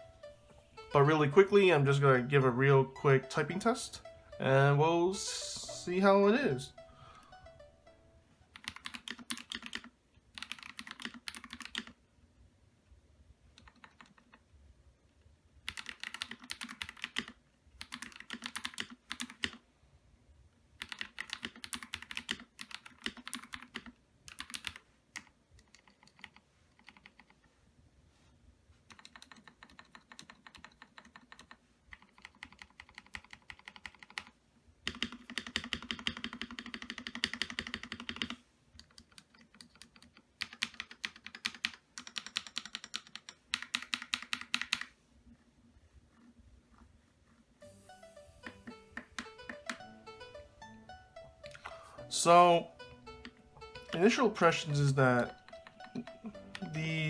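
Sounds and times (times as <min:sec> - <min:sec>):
mechanical keyboard typing: 0:08.5 - 0:12.0, 0:13.6 - 0:14.4, 0:15.7 - 0:19.6, 0:20.8 - 0:27.4, 0:28.9 - 0:44.9.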